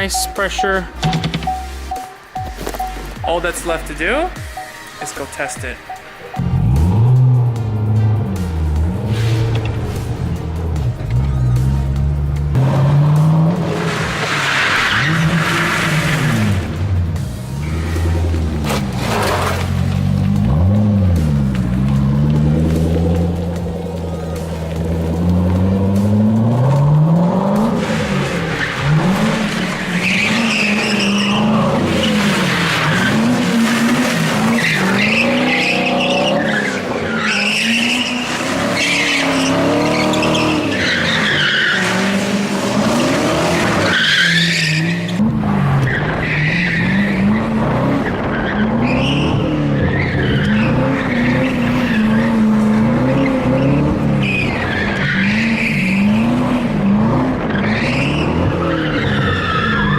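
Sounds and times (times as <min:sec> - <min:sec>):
car engine revving: 0:00.0 - 0:59.9
tyres squealing: 0:27.8 - 0:56.7.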